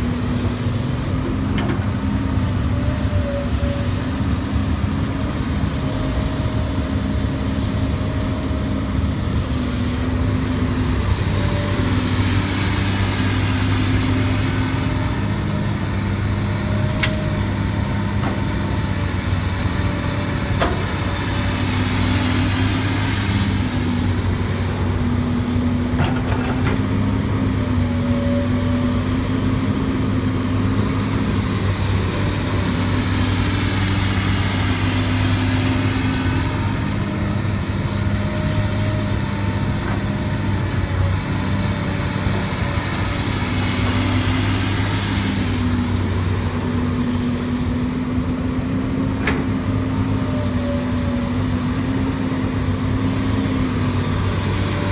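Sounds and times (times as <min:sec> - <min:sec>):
heavy diesel engine running: 0:00.0 - 0:54.9.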